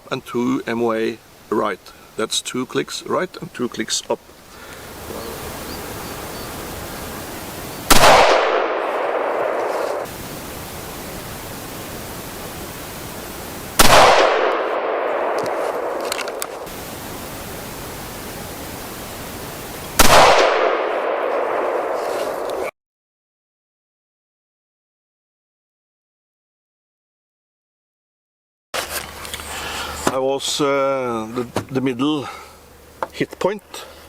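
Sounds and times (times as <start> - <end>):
gunshot echo rolling: 7.8 - 10.1, 13.8 - 16.8, 20.0 - 22.7
rifle shots: 7.8 - 10.1, 13.8 - 16.8, 20.0 - 22.6.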